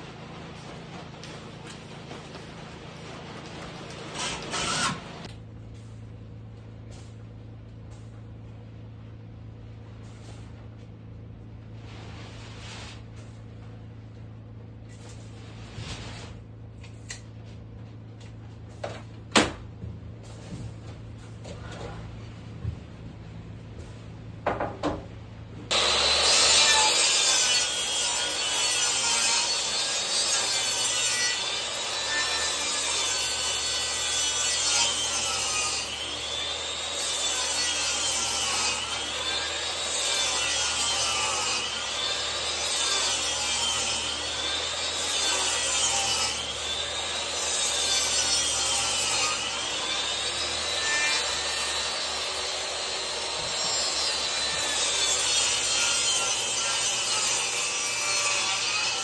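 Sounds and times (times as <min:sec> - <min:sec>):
tool rasping wood: 0:04.1 - 0:05.2.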